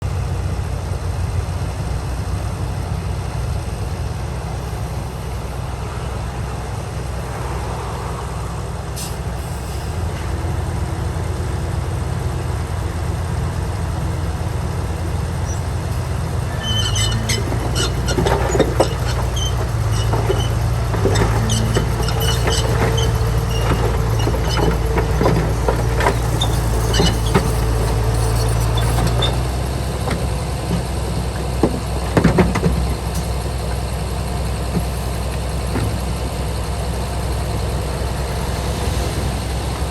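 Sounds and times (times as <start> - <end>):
bulldozer diesel engine: 0.0 - 39.9
metallic clanking and squeaks: 15.0 - 39.9.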